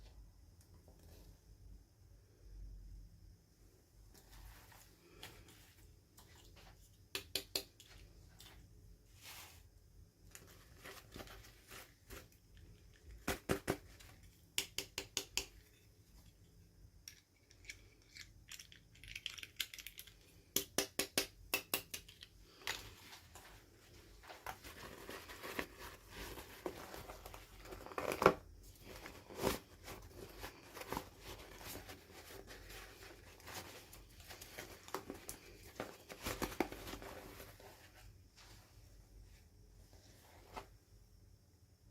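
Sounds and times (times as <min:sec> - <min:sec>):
wrapping crinkling: 0:22.5 - 0:38.0.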